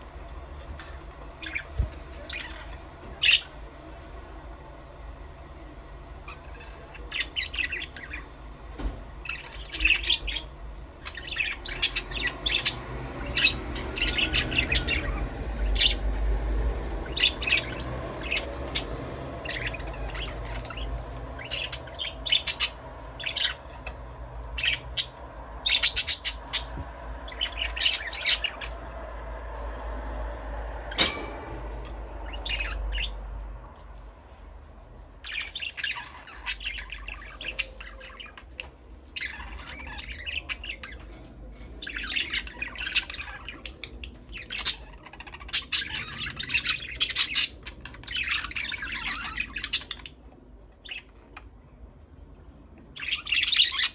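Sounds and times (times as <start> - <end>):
low steady hum: 0.0 - 46.9
budgerigars chirping: 1.4 - 3.5, 6.3 - 8.3, 9.2 - 16.1, 16.8 - 28.8, 30.9 - 33.2, 35.2 - 41.1, 41.8 - 50.2, 53.0 - 53.9.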